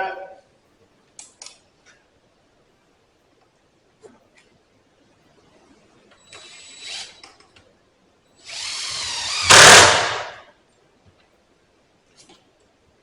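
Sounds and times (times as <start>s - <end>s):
power drill whining into wood: 6.2s - 7.2s, 8.4s - 10.3s.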